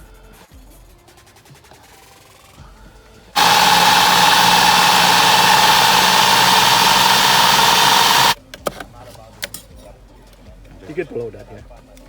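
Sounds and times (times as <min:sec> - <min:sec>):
electric food chopper whining: 0:03.4 - 0:08.4.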